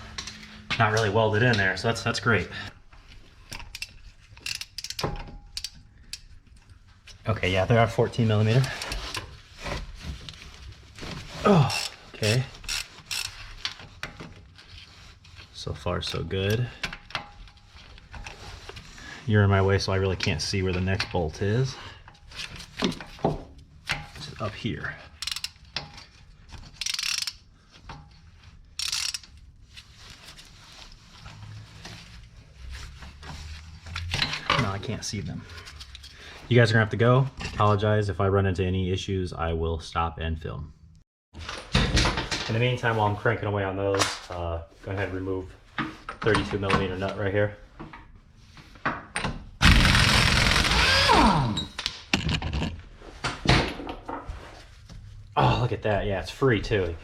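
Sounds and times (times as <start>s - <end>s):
ratchet wrench clicking: 3.7s - 6.2s, 11.7s - 13.4s, 25.2s - 25.6s, 26.8s - 27.4s, 28.8s - 29.3s, 49.6s - 51.6s.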